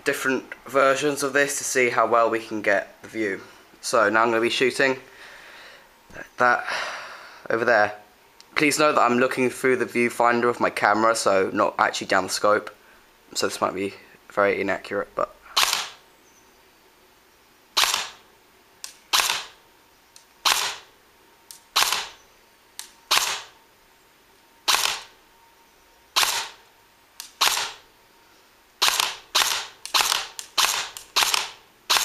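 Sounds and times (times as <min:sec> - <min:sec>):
airsoft rifle shots: 0:15.6 - 0:16.0, 0:17.8 - 0:18.2, 0:19.1 - 0:19.6, 0:20.4 - 0:20.9, 0:21.7 - 0:22.2, 0:23.1 - 0:23.6, 0:24.7 - 0:25.1, 0:26.2 - 0:26.6, 0:27.2 - 0:27.8, 0:28.8 - 0:32.0.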